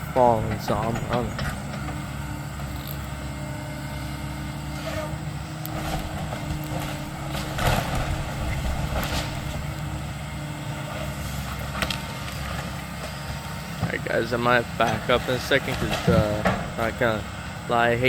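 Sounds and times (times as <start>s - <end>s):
machine engine running: 0.0s - 18.0s
building cracking and crashing: 5.8s - 9.7s, 15.2s - 17.0s.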